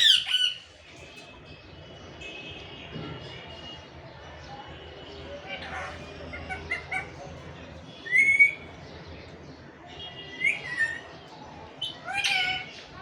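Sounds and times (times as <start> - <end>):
parakeet whistled calls: 0.0 - 0.6.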